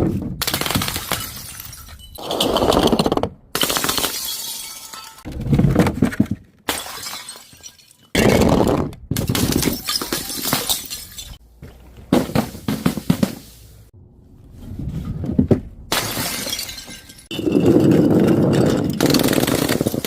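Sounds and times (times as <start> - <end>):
glass bottles shattering: 1.0 - 2.8, 3.8 - 5.3, 6.7 - 8.3, 9.2 - 11.4, 15.9 - 20.0.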